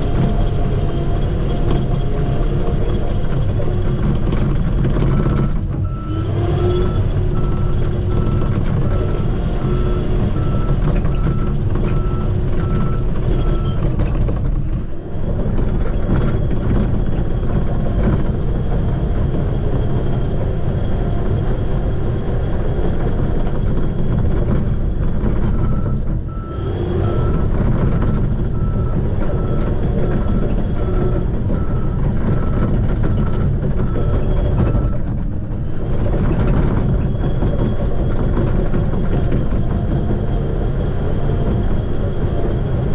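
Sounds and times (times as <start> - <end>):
bulldozer diesel engine running: 0.0 - 42.9
reversing alarm beeping: 25.5 - 35.0.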